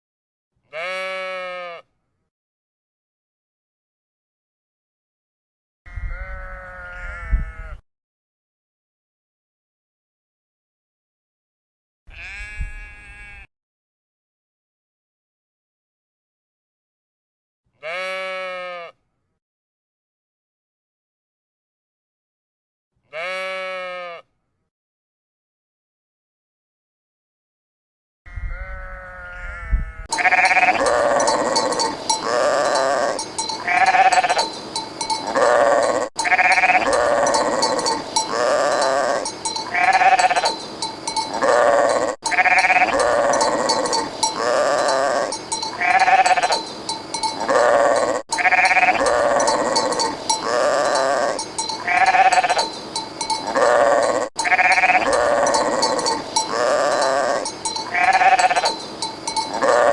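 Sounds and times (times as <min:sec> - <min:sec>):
sheep bleating: 0:00.7 - 0:01.9, 0:05.9 - 0:07.8, 0:12.1 - 0:13.5, 0:17.8 - 0:19.0, 0:23.1 - 0:24.2, 0:28.3 - 0:59.9.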